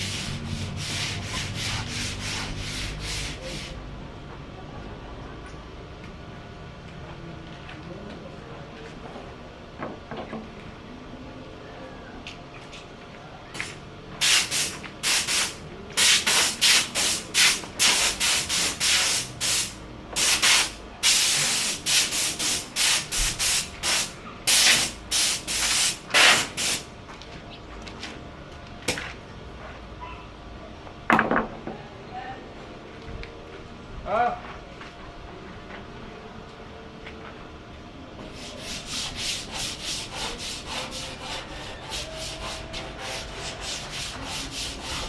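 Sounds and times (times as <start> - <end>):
hand sanding wood: 0.0 - 3.8, 14.2 - 26.8, 38.2 - 45.0.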